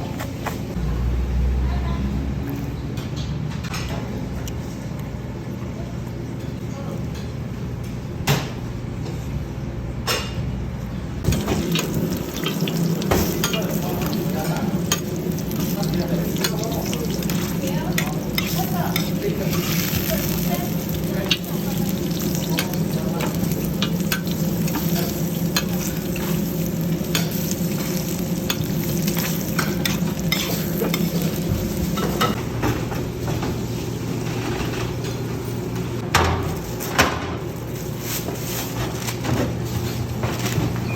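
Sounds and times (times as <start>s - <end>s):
pancakes sizzling in oil: 11.2s - 32.3s
metal utensils scraping pan: 11.3s - 31.3s.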